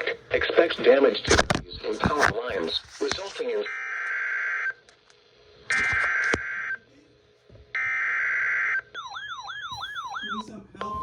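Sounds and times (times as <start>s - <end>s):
warbling electronic tone: 9.0s - 11.0s.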